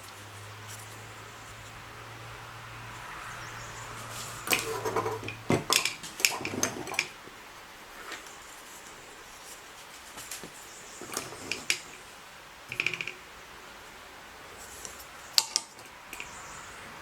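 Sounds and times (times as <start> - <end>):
hard objects clattering: 4.1 - 7.3, 10.3 - 12.0, 12.7 - 13.2.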